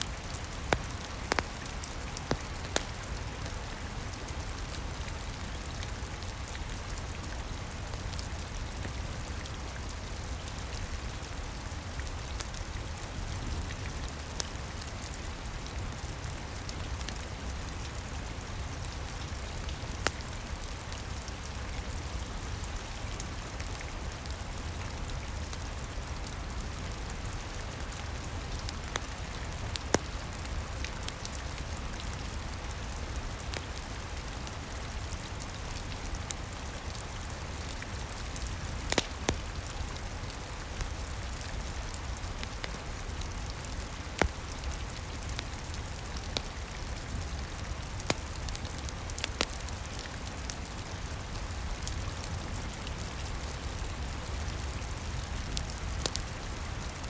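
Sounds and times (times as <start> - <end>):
steady rain: 0.0 - 57.0
wood fire crackling pops: 0.1 - 4.7, 19.3 - 21.4, 27.0 - 30.3, 36.4 - 40.0, 44.1 - 47.4, 48.0 - 50.6, 55.0 - 57.0.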